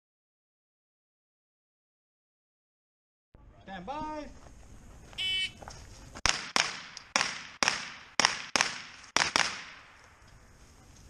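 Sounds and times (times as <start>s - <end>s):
rifle shots: 6.2s - 10.0s.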